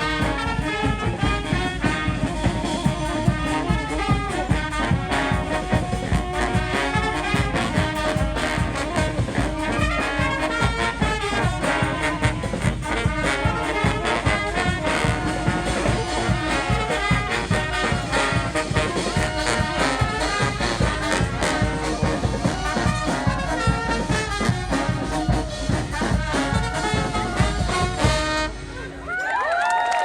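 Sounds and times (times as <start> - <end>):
steady drum beat: 0.0 - 28.6
brass marching band playing: 0.0 - 29.1.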